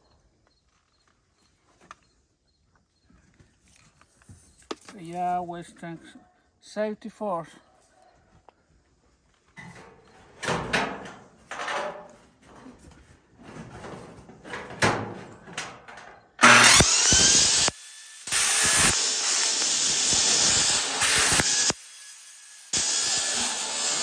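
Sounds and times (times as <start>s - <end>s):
sheet tin clattering and scraping: 10.4s - 16.1s
circular saw cutting tin: 16.4s - 24.0s.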